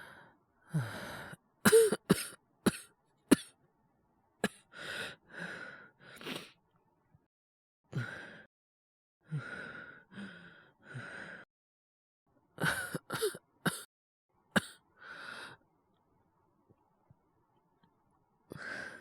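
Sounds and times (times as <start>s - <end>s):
man coughing: 1.7s - 3.5s, 12.6s - 13.9s.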